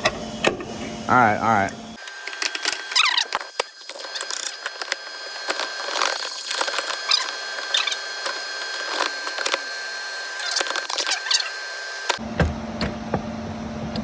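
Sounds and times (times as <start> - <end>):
metal parts clinking and scraping: 2.0 - 12.2
short squeaks: 2.0 - 12.2.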